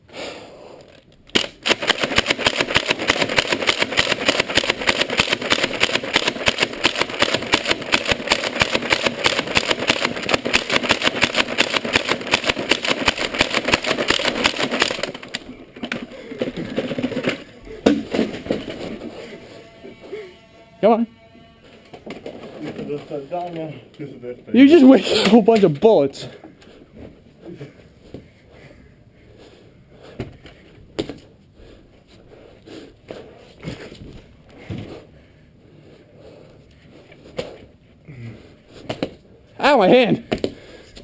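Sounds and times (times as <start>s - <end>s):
toy blaster full-auto rattle: 1.3s - 17.5s.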